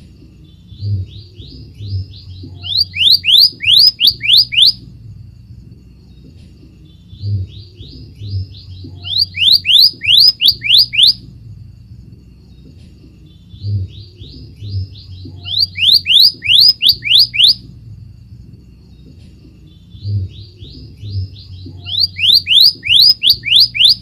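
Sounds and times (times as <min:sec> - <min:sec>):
faint low hum: 0:00.0 - 0:24.0
bird whistling song: 0:00.4 - 0:04.9, 0:06.9 - 0:11.3, 0:12.6 - 0:17.7, 0:18.9 - 0:24.0.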